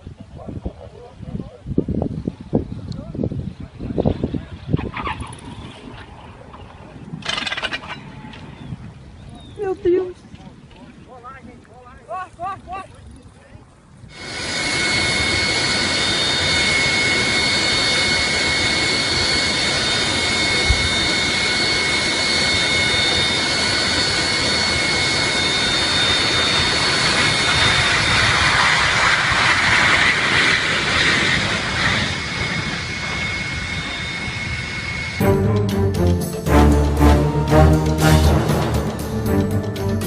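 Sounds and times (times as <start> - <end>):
jet engine turbine whine: 14.1 - 40.0.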